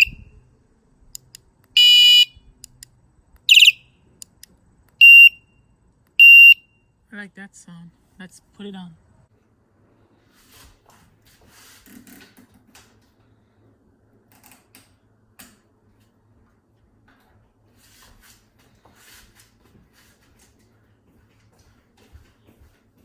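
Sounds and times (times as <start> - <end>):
faint low hum: 0.0 - 11.4.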